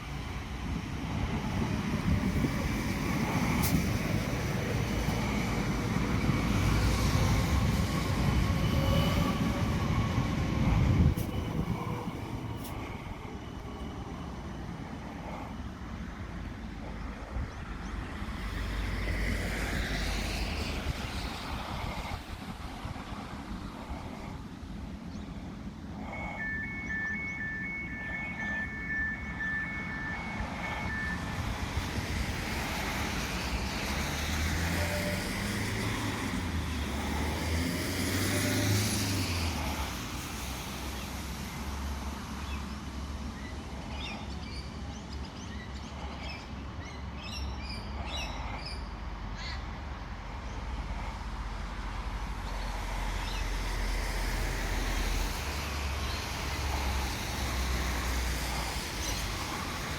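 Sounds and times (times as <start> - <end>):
tram motors whining: 0.0 - 17.4, 23.8 - 37.4.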